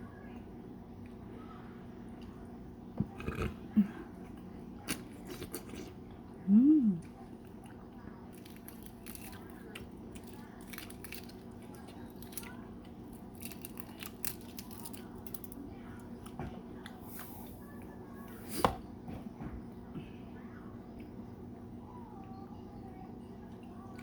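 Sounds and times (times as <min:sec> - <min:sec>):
eggshell clicks and crackles: 0:08.3 - 0:15.6.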